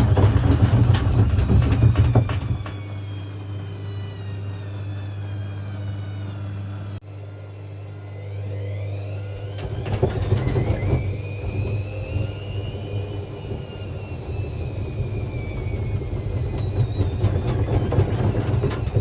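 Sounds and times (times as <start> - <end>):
drum rumbling and knocking: 0.0 - 3.0, 9.6 - 11.8, 15.4 - 19.0
washing machine motor whining: 0.0 - 19.0.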